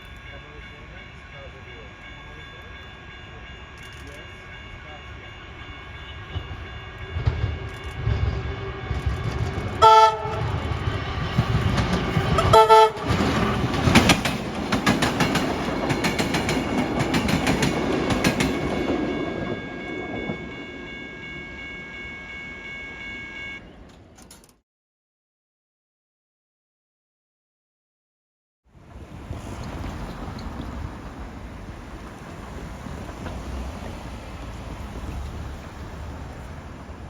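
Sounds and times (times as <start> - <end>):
train horn blasts: 0.0 - 13.7, 18.9 - 23.8
train wheels clicking over rail joints: 8.9 - 19.0, 29.0 - 37.0.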